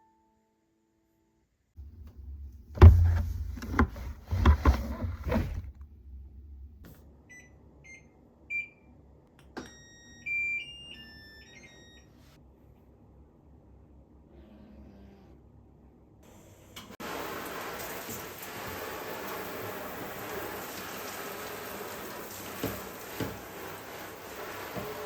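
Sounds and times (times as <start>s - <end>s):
knocks and clatter: 1.8s - 6.9s.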